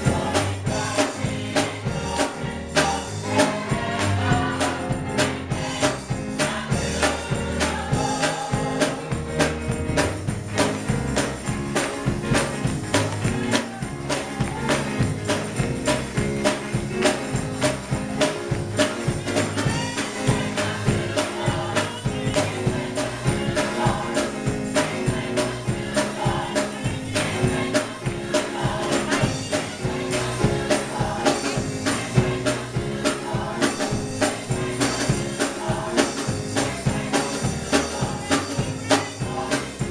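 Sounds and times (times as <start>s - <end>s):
church choir singing: 0.0s - 39.9s
instrumental accompaniment with beat: 0.0s - 39.9s.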